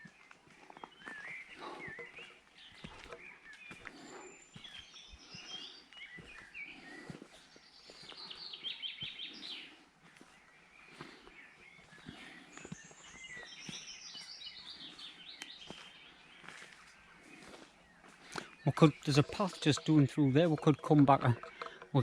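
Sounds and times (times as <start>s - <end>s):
songbirds singing and calling: 0.0s - 22.0s
bird repeated notes: 18.7s - 22.0s.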